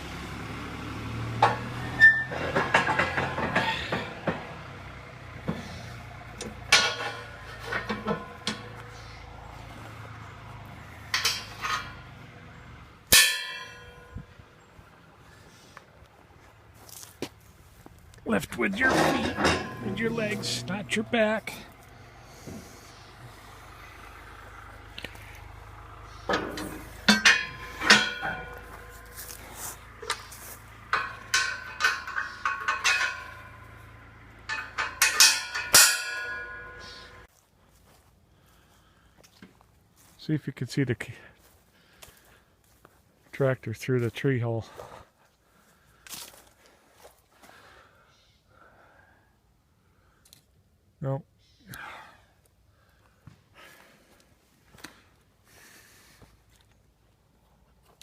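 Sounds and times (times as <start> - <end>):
sharp metallic clang: 6.4 - 9.0, 11.0 - 12.1, 13.1 - 14.2, 18.7 - 21.6, 26.1 - 37.3
low steady hum: 16.3 - 38.8.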